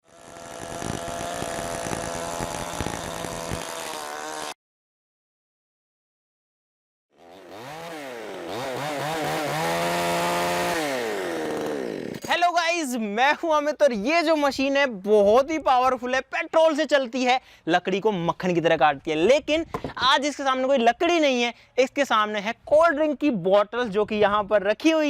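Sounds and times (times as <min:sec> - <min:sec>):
chainsaw engine revving: 0:00.0 - 0:04.6, 0:07.1 - 0:12.3.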